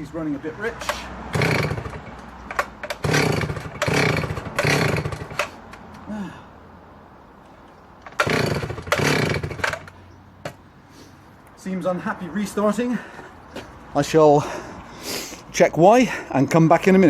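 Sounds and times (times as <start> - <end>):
engine turning over without firing: 0.8 - 5.6, 8.1 - 10.0
chainsaw recoil starter pulls: 0.8 - 5.8, 8.0 - 10.0.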